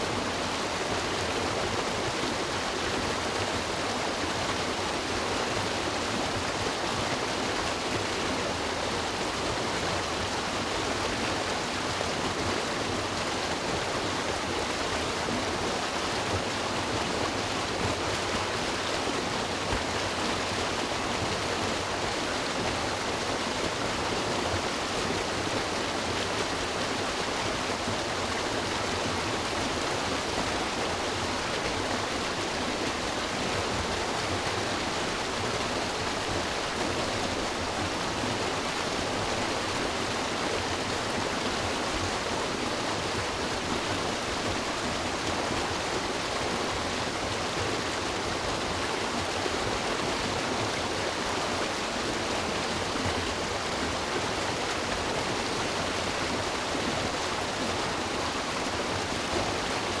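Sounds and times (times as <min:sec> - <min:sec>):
river water rushing over rocks: 0:00.0 - 1:00.0.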